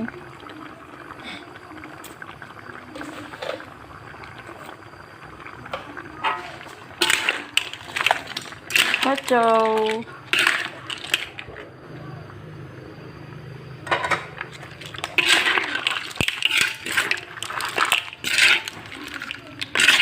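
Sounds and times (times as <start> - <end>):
spatula clattering shells in pan: 6.2 - 11.5, 13.9 - 20.0.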